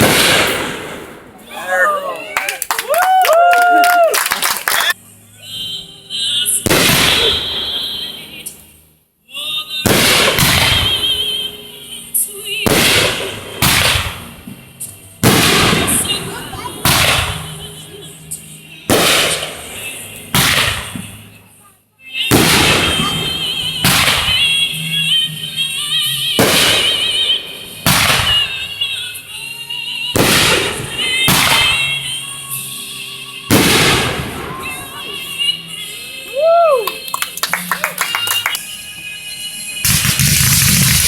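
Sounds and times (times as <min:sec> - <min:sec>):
firework bangs with crackle: 0:00.0 - 0:01.4, 0:06.6 - 0:08.0, 0:09.8 - 0:11.2, 0:12.6 - 0:14.4, 0:15.2 - 0:17.5, 0:18.9 - 0:21.2, 0:22.3 - 0:24.7, 0:26.4 - 0:28.8, 0:30.1 - 0:32.0, 0:33.5 - 0:34.8, 0:39.8 - 0:41.0
whistling firework: 0:06.7 - 0:08.3, 0:26.4 - 0:28.8, 0:39.8 - 0:41.0
warbling fireworks whistles: 0:06.9 - 0:08.2.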